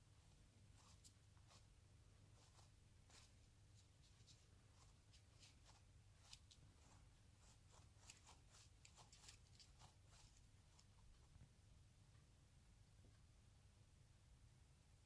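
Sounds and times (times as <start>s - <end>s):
low steady hum: 0.0s - 15.0s
faint rustling and small clicks: 0.2s - 1.7s, 2.3s - 12.3s.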